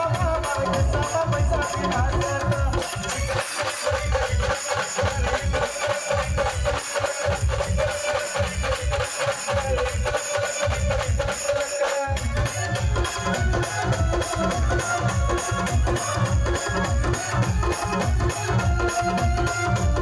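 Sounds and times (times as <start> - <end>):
jingling percussion: 0.0 - 20.0
bass drum beat: 12.2 - 20.0.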